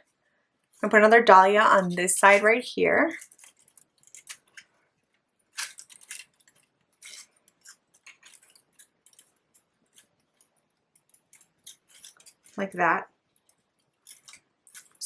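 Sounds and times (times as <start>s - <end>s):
paper flowers rustling and crinkling: 1.8s - 15.0s.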